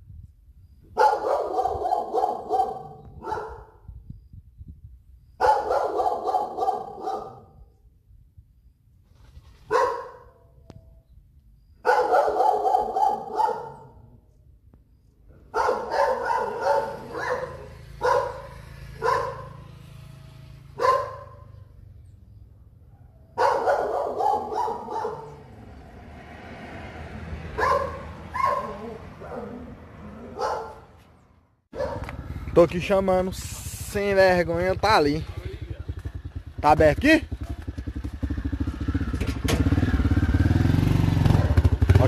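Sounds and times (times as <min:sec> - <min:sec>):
dog barking: 0:01.0 - 0:03.8, 0:05.4 - 0:07.6, 0:09.7 - 0:10.6, 0:11.8 - 0:14.0, 0:15.4 - 0:19.6, 0:20.8 - 0:21.6, 0:22.9 - 0:25.6, 0:27.5 - 0:31.0, 0:31.7 - 0:32.2, 0:41.3 - 0:41.8.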